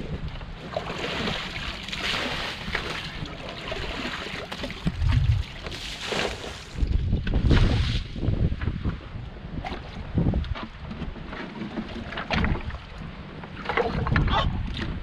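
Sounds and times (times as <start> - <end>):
water sloshing and trickling: 0.2 - 8.3, 9.6 - 15.0
wind gust on microphone: 4.7 - 5.6, 6.3 - 11.2.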